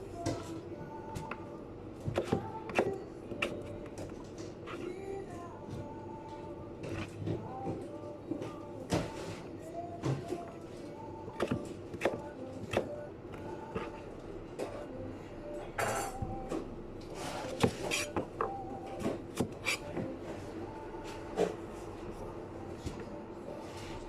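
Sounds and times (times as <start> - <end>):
utensils and dishes clinking: 15.5 - 16.6, 17.2 - 20.1.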